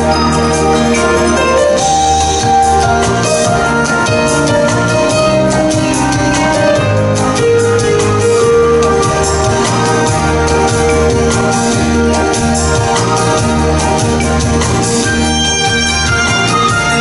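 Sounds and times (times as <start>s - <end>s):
dance music with organ chords: 0.0s - 17.0s.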